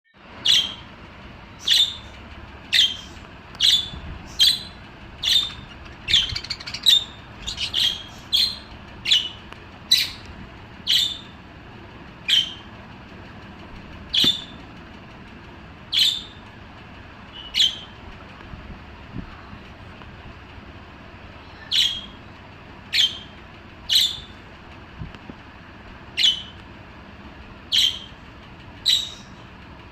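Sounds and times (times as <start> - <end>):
budgerigar chirping: 0.4 - 0.8, 1.6 - 2.1, 2.7 - 10.2, 10.9 - 11.4, 12.3 - 12.7, 14.1 - 14.6, 15.9 - 16.4, 17.4 - 17.9, 21.7 - 22.2, 22.9 - 24.3, 26.2 - 26.6, 27.7 - 28.2, 28.8 - 29.4.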